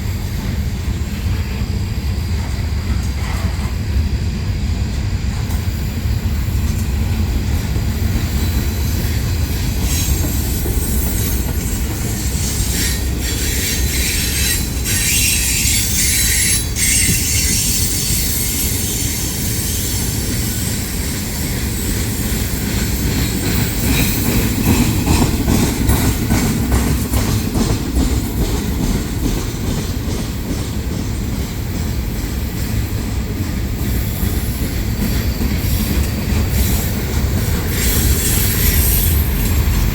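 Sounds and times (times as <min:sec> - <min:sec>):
freight train wheels rumbling on rail: 0:00.0 - 0:39.9
high wheel squeal: 0:08.3 - 0:24.3, 0:37.6 - 0:39.6.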